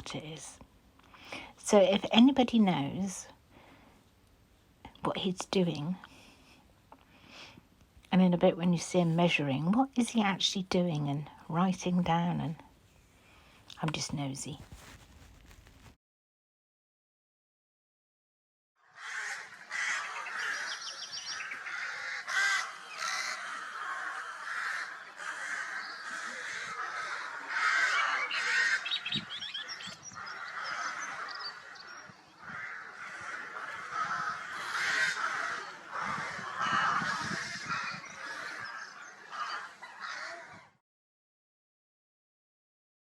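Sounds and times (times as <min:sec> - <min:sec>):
marsh birds calling: 0:18.9 - 0:40.8
high trilling bird calls: 0:19.0 - 0:40.3.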